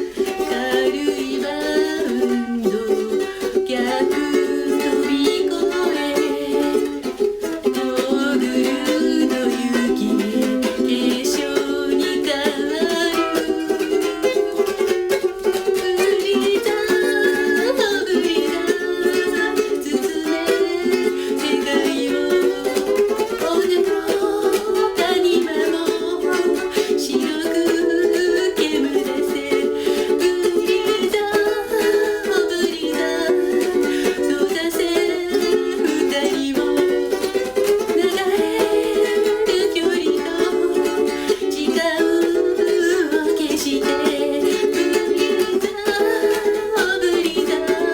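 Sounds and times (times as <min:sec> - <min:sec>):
person singing: 0:00.0 - 0:47.9
ukulele playing chords: 0:00.0 - 0:47.9.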